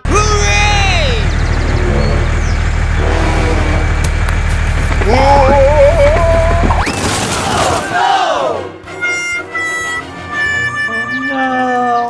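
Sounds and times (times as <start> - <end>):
small vehicle engine drone: 0.0 - 6.9.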